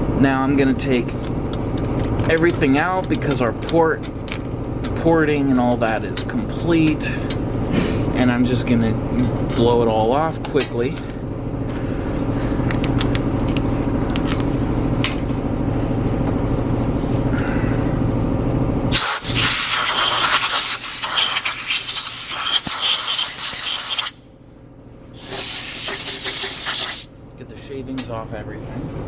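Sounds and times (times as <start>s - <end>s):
low machine hum: 0.0s - 29.0s
compressed air blow gun hissing: 18.9s - 24.2s, 25.2s - 27.1s.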